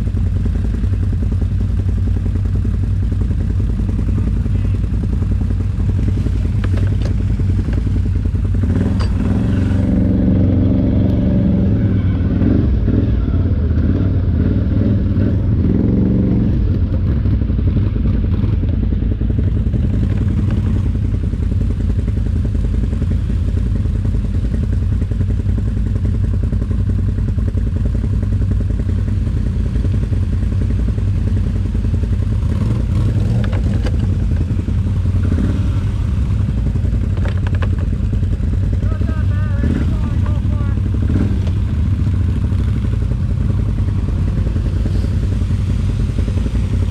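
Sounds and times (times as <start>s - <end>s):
atv engine running with rattling: 0.0s - 46.9s.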